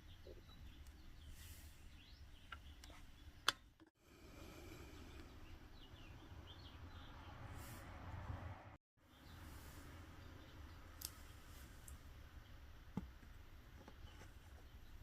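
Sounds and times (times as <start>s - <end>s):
distant birds chirping: 0.0s - 8.0s.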